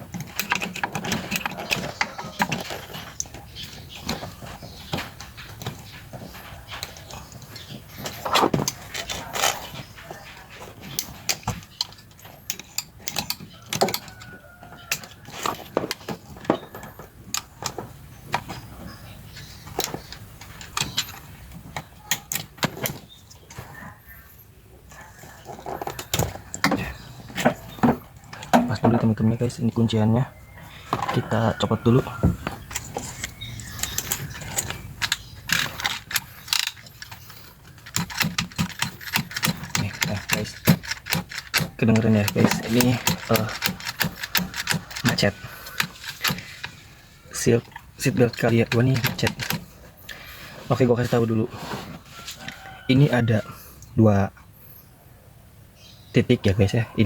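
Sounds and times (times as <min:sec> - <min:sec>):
plastic and metal parts rattling: 0:00.0 - 0:23.7, 0:24.9 - 0:29.7, 0:30.8 - 0:52.8
seatbelt retractor ratcheting clicks: 0:32.7 - 0:46.8.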